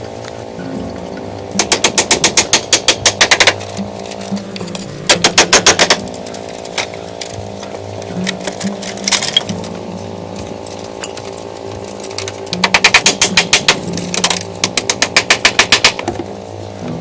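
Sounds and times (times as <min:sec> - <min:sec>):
steady hum: 0:00.0 - 0:17.0
rapid hammering impacts: 0:01.5 - 0:07.4, 0:10.4 - 0:16.3.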